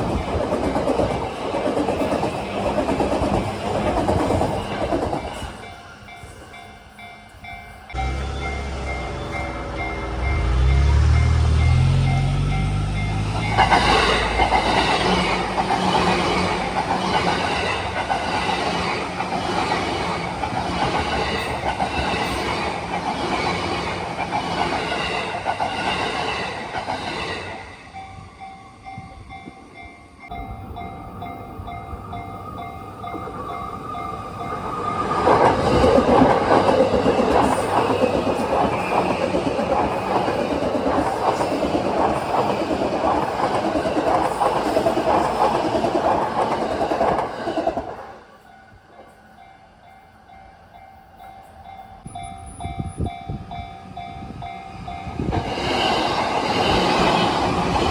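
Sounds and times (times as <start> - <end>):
train wheels clacking on rail joints: 0.0 - 5.7, 7.9 - 27.4, 30.8 - 48.0
level crossing warning bell: 4.8 - 15.5, 27.9 - 38.3, 48.5 - 55.4.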